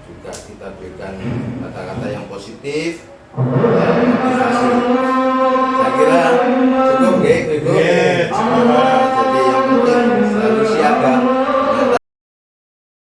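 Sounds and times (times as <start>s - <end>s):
sustained notes: 3.3s - 12.0s
chant-like singing voice: 3.4s - 12.0s.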